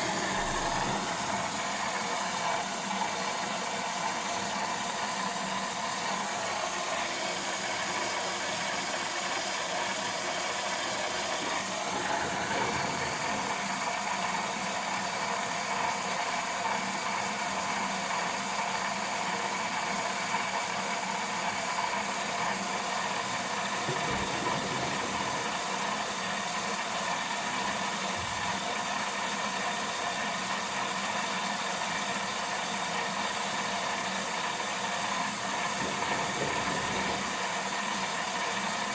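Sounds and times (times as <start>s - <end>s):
washing machine running: 0.0s - 38.9s.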